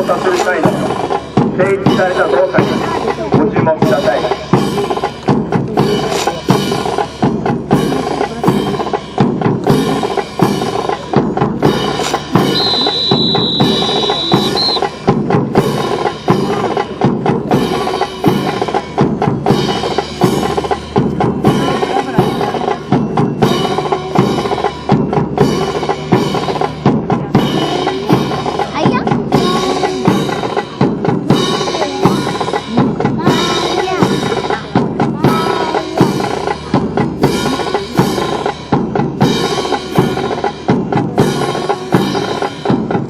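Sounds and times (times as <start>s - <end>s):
steady drum beat: 0.0s - 43.0s
brass band music: 11.6s - 16.8s
high steady tone: 12.2s - 15.1s.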